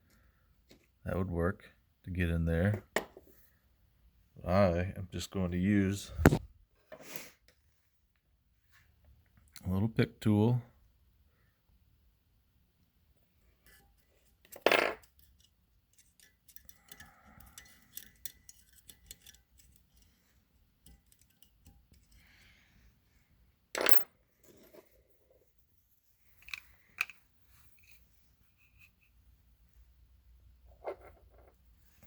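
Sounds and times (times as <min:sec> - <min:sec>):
steel pick scraping metal: 0:15.1 - 0:22.3.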